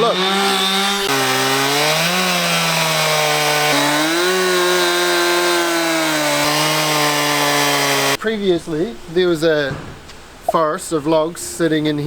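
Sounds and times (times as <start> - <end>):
chainsaw cutting log: 0.0 - 8.2.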